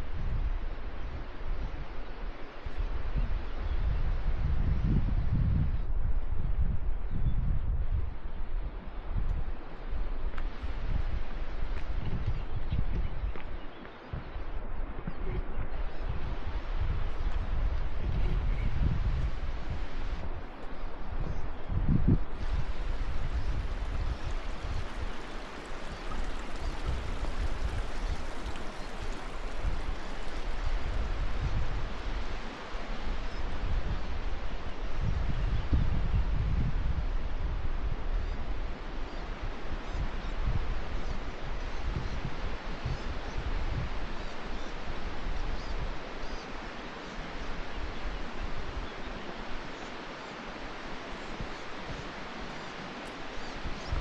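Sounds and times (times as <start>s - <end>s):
wind buffeting microphone: 0.0s - 46.4s, 50.6s - 54.0s
flowing water rushing: 22.3s - 33.7s.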